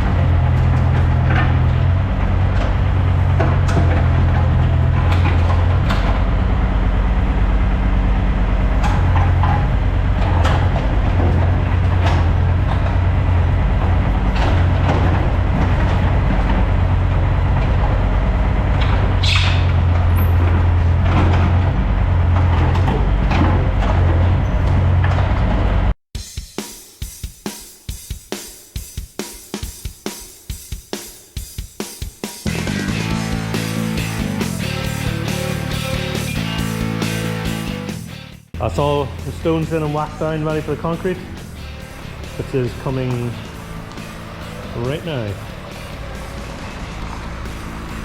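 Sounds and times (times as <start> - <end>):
construction machine engine running: 0.0 - 26.0, 32.5 - 48.0
drum kit music: 26.1 - 48.0.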